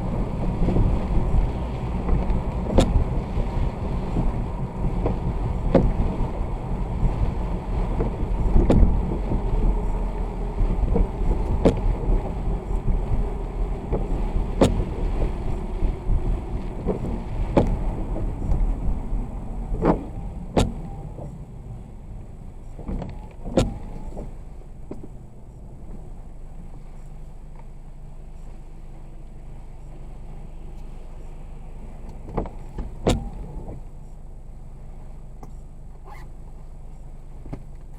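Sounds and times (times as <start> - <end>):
road and tyre rumble: 0.0 - 37.9
windshield wiper knock: 2.0 - 3.2, 4.1 - 6.2, 7.9 - 9.8, 10.8 - 13.1, 13.8 - 19.1, 19.7 - 21.4, 22.7 - 25.2, 32.2 - 33.8.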